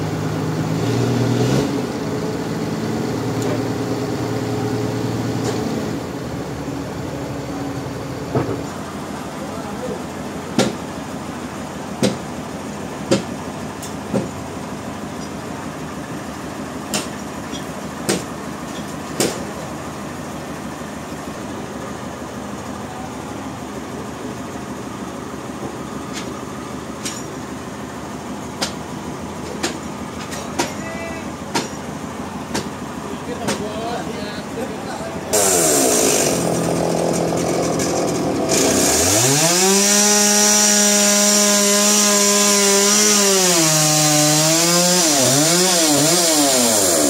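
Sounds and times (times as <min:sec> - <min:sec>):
sawmill machinery running: 0:00.0 - 0:47.0
sharp knocks and clacks: 0:16.9 - 0:17.2, 0:18.1 - 0:19.4, 0:28.6 - 0:28.8, 0:31.5 - 0:31.8, 0:32.5 - 0:32.7.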